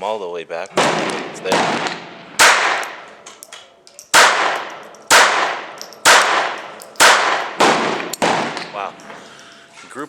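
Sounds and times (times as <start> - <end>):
pistol shots with echo: 0.7 - 3.2, 4.0 - 9.0.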